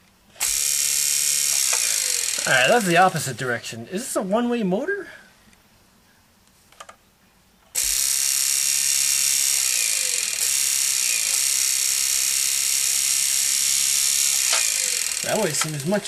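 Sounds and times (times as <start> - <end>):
electric motor whirring: 0.4 - 3.4, 7.8 - 16.0.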